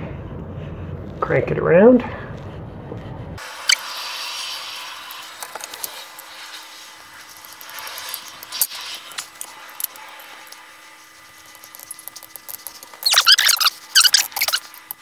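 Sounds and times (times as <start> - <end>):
hex key scraping screw into wood: 7.2 - 15.0.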